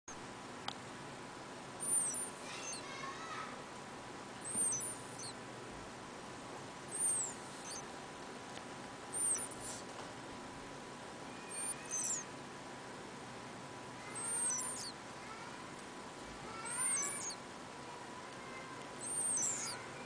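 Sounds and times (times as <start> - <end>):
cat snoring with squeaky whistle: 1.8 - 2.8, 4.4 - 5.4, 6.9 - 7.8, 9.1 - 9.6, 11.5 - 12.3, 14.1 - 15.0, 16.7 - 17.4, 19.0 - 19.8.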